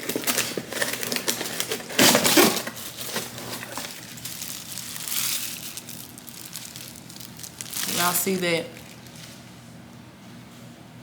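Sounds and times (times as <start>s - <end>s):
plastic parts clicking and clattering: 0.0s - 4.0s
packaging rustling: 0.0s - 9.5s.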